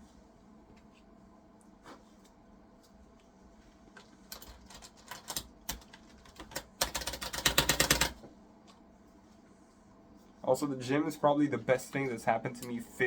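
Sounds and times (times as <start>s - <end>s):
computer keyboard keys clicking: 4.3s - 8.2s.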